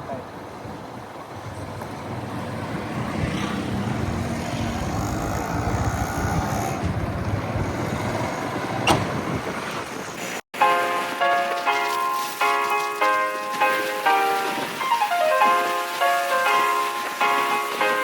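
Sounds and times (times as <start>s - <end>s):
vehicle engine and road noise: 0.0s - 10.4s.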